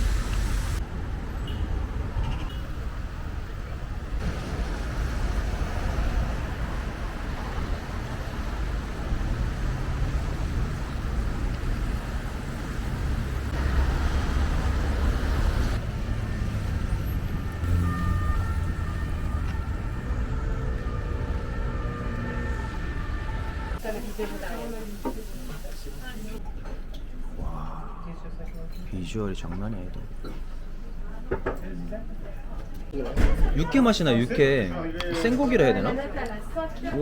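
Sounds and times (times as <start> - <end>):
city traffic rumble: 0.0 - 27.8.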